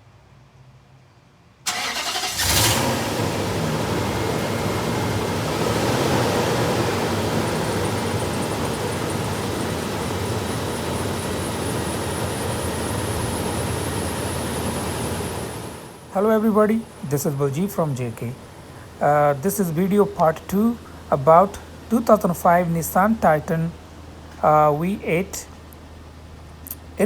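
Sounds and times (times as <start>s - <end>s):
truck engine starting and running: 1.6s - 27.0s.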